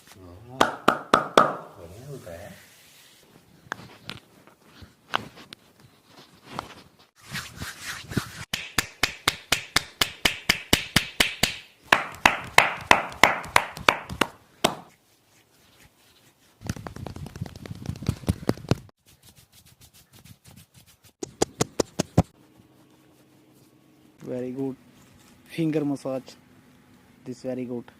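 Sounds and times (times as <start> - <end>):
hands slapping skin: 0.6 - 1.7, 8.5 - 15.0, 21.2 - 22.3
rough rubbing on skin: 1.6 - 24.2.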